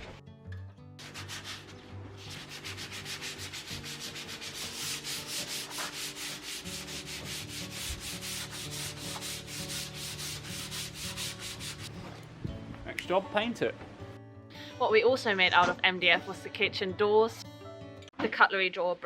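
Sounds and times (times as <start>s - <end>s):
background music: 0.0s - 19.0s
hand sanding strokes: 1.0s - 11.9s.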